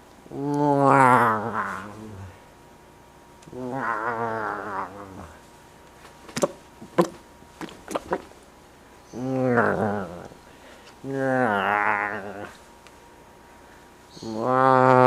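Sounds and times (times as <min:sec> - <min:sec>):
person wailing: 0:00.3 - 0:02.4, 0:14.3 - 0:15.0.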